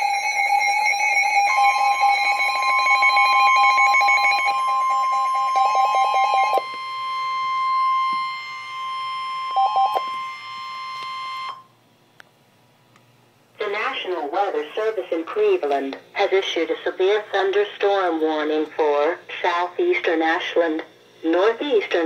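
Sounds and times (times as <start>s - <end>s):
rapid alarm beeps: 0.0s - 11.7s
steady high warning tone: 0.0s - 11.8s, 13.6s - 20.5s.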